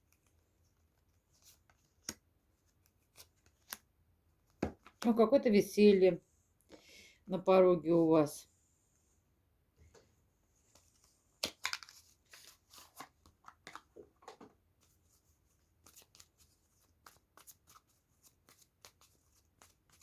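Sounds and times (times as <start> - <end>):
cards being shuffled: 0.1 - 3.9, 4.5 - 5.2, 10.7 - 14.9, 15.8 - 20.0.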